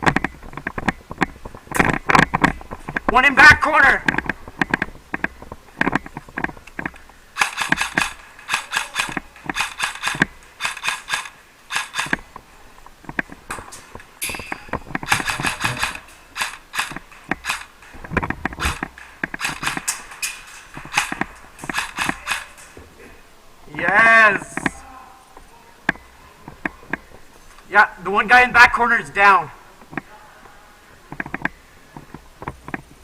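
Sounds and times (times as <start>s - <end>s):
airsoft guns firing rapid shots: 7.4s - 12.3s, 14.9s - 17.8s, 18.6s - 20.1s, 20.8s - 22.7s.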